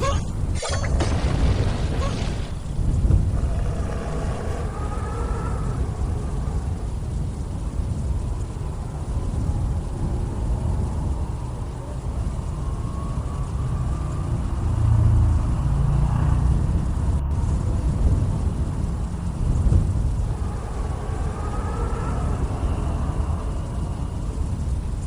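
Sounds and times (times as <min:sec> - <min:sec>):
low rumbling noise: 0:00.0 - 0:25.0
faint wavering tones: 0:01.9 - 0:15.7, 0:18.9 - 0:25.0.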